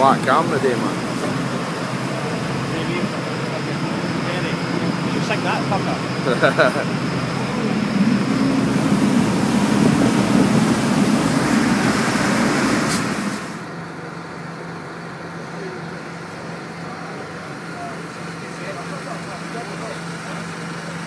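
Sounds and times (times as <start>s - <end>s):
rush of wind and water: 0.0s - 13.6s
boat engine hum: 0.0s - 21.0s.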